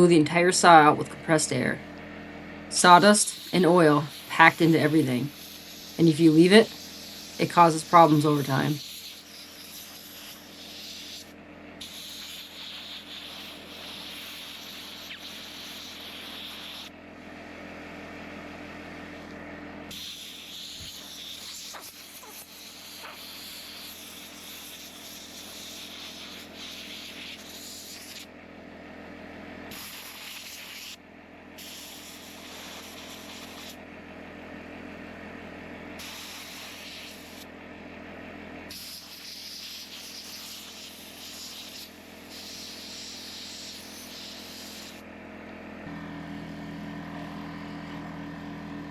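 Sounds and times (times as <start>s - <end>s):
compressed air hissing: 2.8s - 16.9s, 19.9s - 28.3s, 29.7s - 31.0s, 31.6s - 33.8s, 36.0s - 37.4s, 38.7s - 45.0s.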